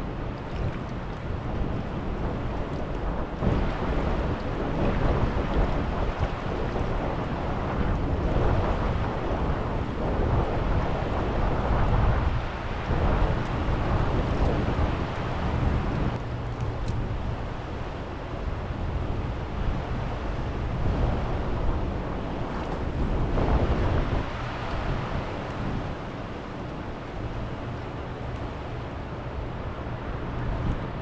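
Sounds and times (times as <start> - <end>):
wind buffeting microphone: 0.0 - 31.0.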